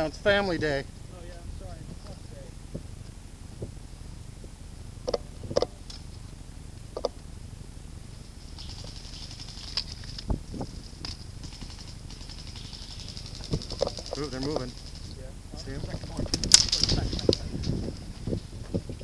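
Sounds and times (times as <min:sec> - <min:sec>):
dull thump: 0:00.0 - 0:05.8
airsoft guns firing full auto: 0:00.0 - 0:19.0
airsoft gun snaps: 0:16.3 - 0:17.0.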